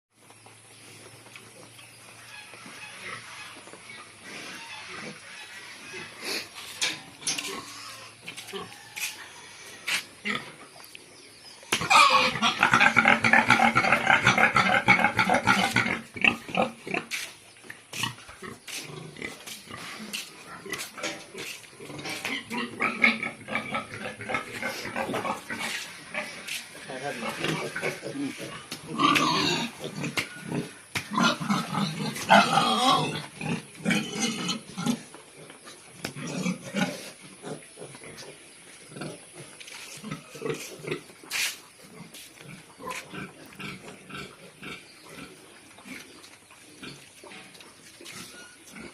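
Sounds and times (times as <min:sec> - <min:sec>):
pigs squealing: 0:02.2 - 0:10.7, 0:11.7 - 0:17.2, 0:17.9 - 0:35.1.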